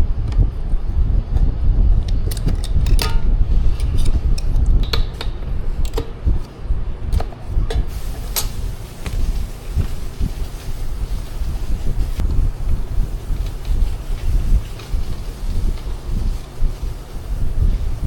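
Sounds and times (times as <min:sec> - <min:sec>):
low rumble: 0:00.0 - 0:18.0.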